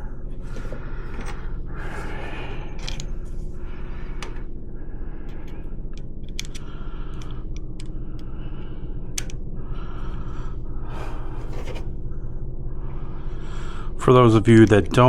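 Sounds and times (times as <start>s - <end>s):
steady low hum: 0.0s - 15.0s
sharp clicks: 5.4s - 8.3s, 9.2s - 9.4s.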